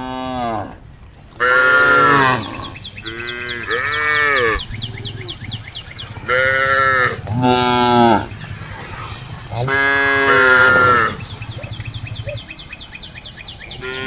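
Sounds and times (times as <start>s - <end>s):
cattle mooing: 1.4s - 4.6s, 6.1s - 11.8s
high chirps: 10.5s - 14.0s.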